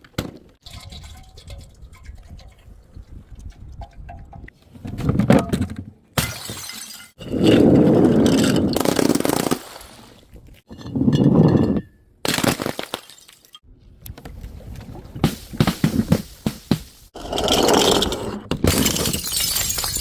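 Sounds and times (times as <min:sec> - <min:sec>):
glass bottles smashing: 0:06.2 - 0:07.2, 0:18.6 - 0:20.0.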